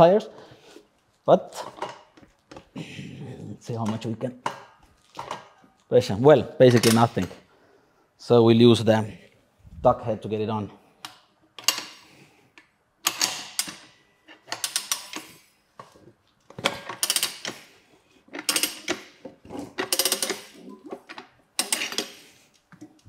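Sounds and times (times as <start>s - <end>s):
tire changer clicking and grinding: 18.3s - 20.6s.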